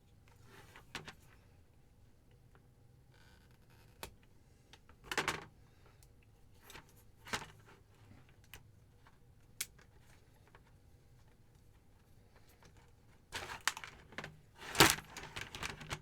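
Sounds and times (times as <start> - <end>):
small hard parts clicking and rustling: 13.4 - 16.0.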